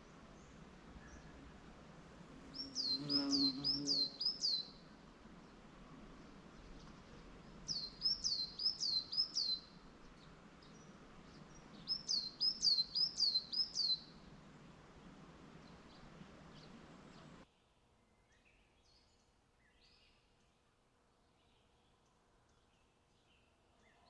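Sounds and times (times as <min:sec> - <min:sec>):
songbird singing: 0:00.0 - 0:20.3
steady outdoor hiss: 0:00.0 - 0:24.0.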